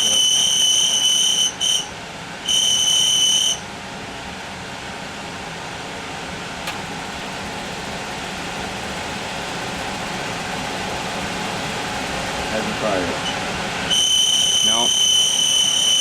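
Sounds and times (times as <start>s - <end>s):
furnace blower fan running: 3.7s - 16.0s
high whining squeal: 13.0s - 16.0s.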